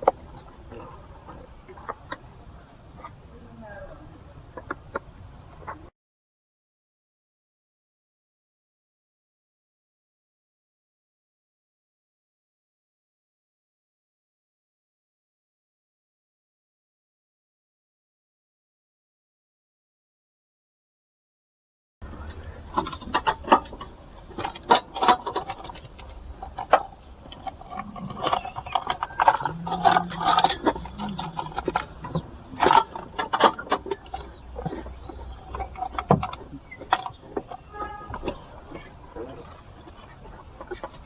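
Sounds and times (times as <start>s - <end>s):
metallic clinks of hand tools: 22.7s - 38.5s.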